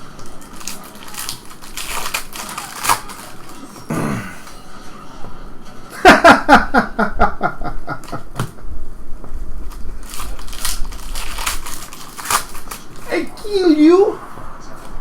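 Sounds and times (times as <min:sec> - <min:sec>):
person laughing: 0:06.0 - 0:08.3.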